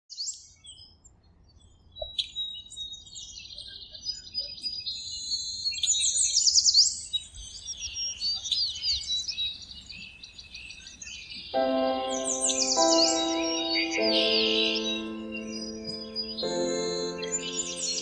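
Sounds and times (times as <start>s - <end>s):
birds chirping and singing: 7.2s - 18.0s.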